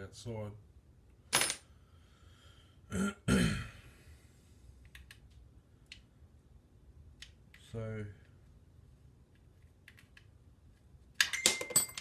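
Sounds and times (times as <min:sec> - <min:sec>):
man clearing throat and coughing: 0:02.9 - 0:03.9.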